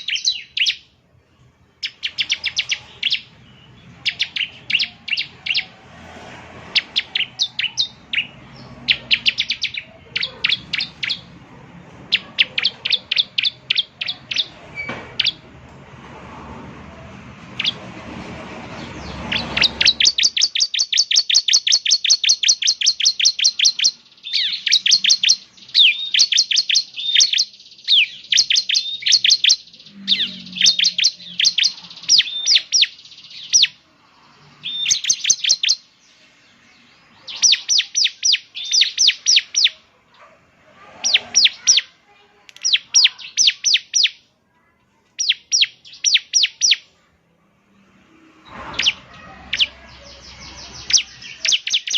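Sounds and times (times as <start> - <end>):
bird singing sharp high notes: 0.0 - 1.0, 1.8 - 11.4, 12.1 - 15.4, 18.8 - 36.1, 36.8 - 39.8, 42.6 - 44.2, 45.2 - 46.9, 48.1 - 51.9.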